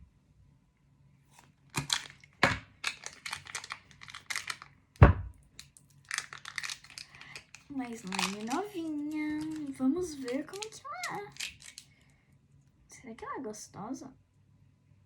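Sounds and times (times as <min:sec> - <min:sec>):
plastic packaging crinkling and tearing: 0:01.7 - 0:04.7, 0:05.5 - 0:11.9
sharp thump: 0:05.0 - 0:05.4.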